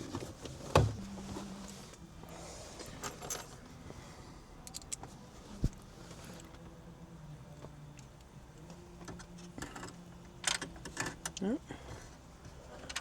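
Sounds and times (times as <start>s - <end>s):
hand tools clinking and rattling: 2.8s - 3.6s.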